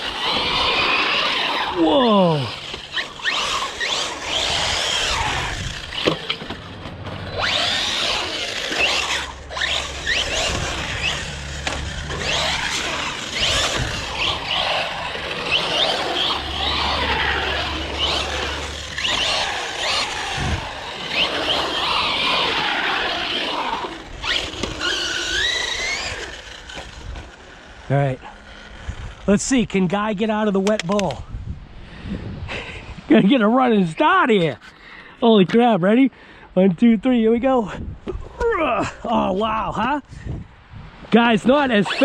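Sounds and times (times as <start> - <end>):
tire squeals: 0.0 - 29.2
electric motor whine: 0.0 - 29.3
low hum: 0.0 - 29.4.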